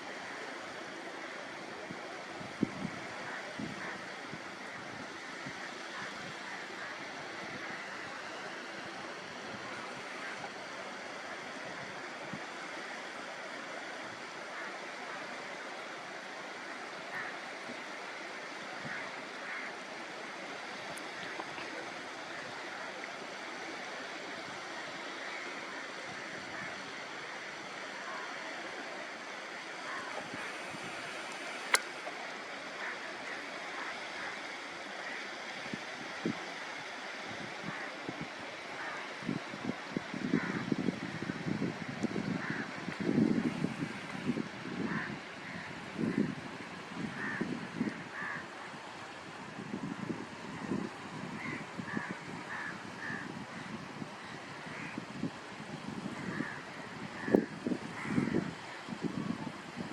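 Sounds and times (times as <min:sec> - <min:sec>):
water washing like waves: 0:00.0 - 0:47.4.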